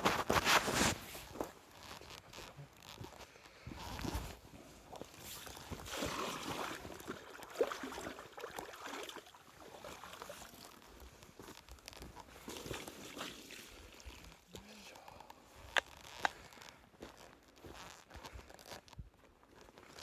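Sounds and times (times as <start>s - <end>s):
water splashing and sloshing: 4.9s - 11.4s, 12.0s - 14.5s.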